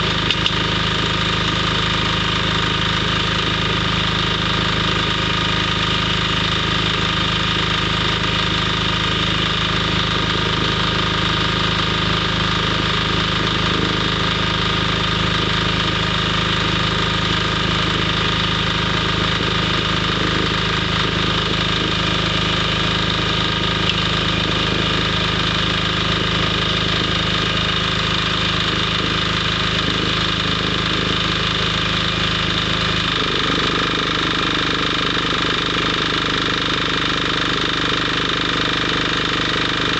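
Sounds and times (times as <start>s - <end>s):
welding arc crackling: 0.0s - 2.3s, 18.7s - 34.3s
welding machine hum: 0.0s - 39.9s.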